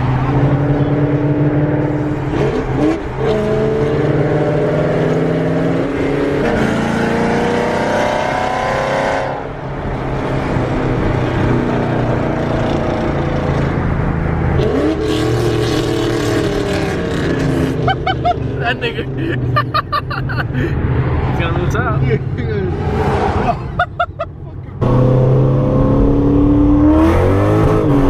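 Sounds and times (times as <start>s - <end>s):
car engine accelerating hard: 24.8s - 28.0s.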